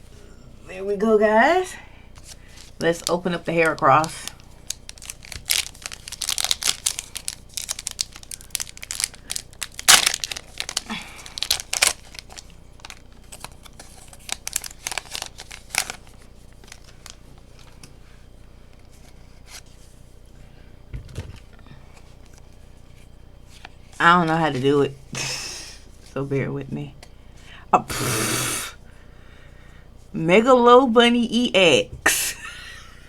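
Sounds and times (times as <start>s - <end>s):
foil wrapper tearing and crinkling: 2.2s - 17.7s.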